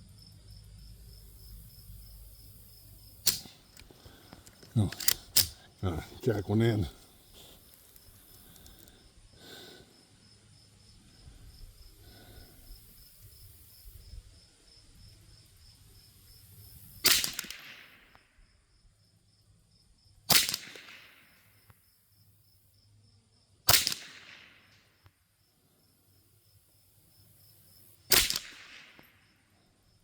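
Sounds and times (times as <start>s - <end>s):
rifle shots: 3.2s - 4.2s, 17.0s - 18.1s, 20.3s - 21.3s, 23.7s - 24.8s, 28.1s - 29.1s.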